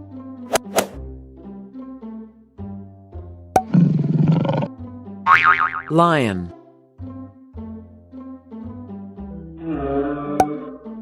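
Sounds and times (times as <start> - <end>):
light children's tune: 5.3 - 11.0.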